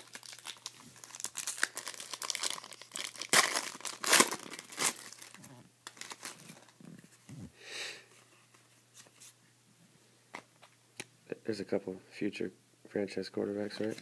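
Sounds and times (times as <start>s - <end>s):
wrapper crinkling and tearing: 0.0s - 6.8s.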